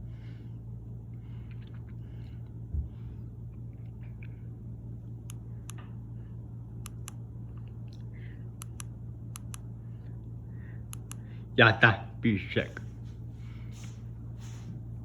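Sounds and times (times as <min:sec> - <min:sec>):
ceiling fan humming: 0:00.0 - 0:15.0
light sharp clicks: 0:06.8 - 0:09.7, 0:10.9 - 0:11.2.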